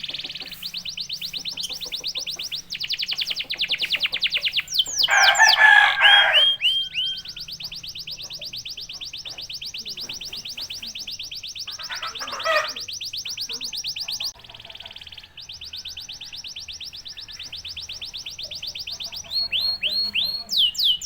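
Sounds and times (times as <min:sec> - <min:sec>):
canary singing trills: 0:00.0 - 0:21.0.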